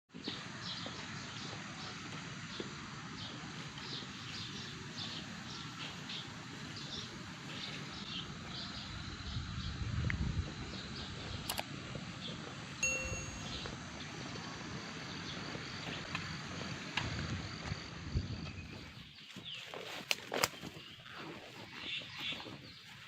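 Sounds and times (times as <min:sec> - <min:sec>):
outdoor background noise: 0:00.1 - 0:23.0
bird chirping: 0:12.3 - 0:13.8.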